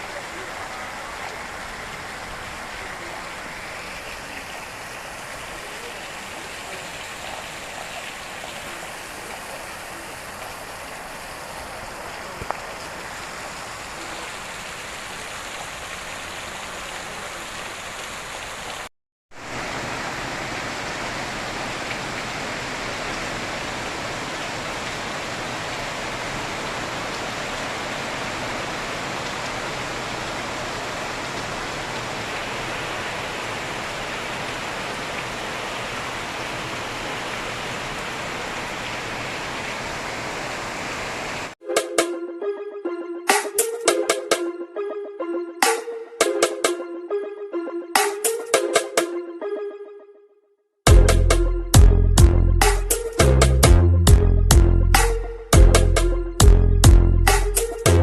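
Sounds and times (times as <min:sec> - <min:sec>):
heavy rain: 0:00.0 - 0:41.6
running floodwater: 0:00.0 - 0:41.6.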